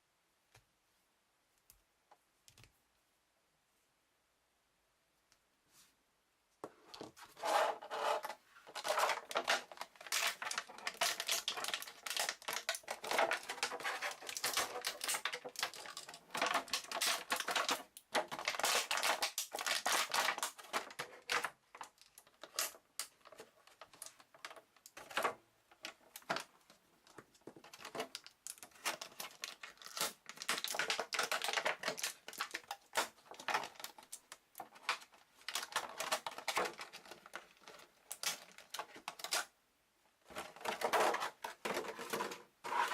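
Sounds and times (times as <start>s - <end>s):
plastic packaging crinkling: 8.7s - 25.3s, 27.6s - 39.5s.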